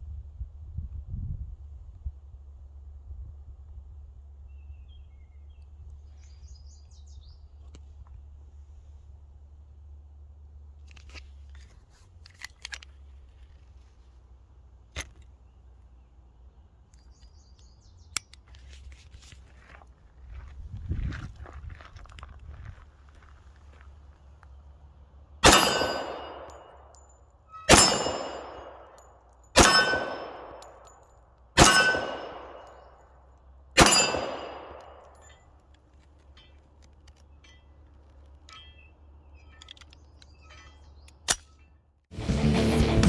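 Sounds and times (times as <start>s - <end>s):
pistol shots with ringing tail: 25.4s - 33.1s, 33.8s - 35.4s
music: 42.1s - 43.0s.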